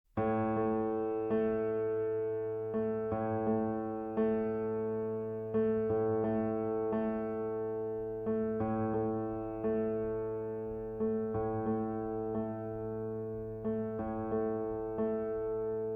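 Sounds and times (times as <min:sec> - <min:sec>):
electric piano chords: 0:00.2 - 0:15.9.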